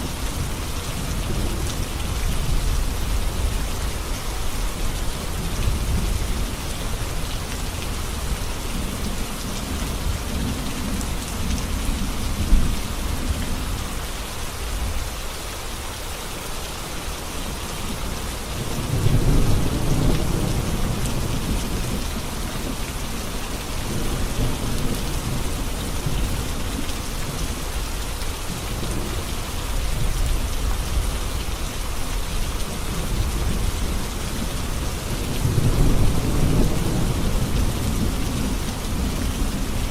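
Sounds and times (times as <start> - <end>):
heavy rain on a road: 0.0 - 39.9
rumbling thunder: 18.6 - 27.7, 32.7 - 39.9.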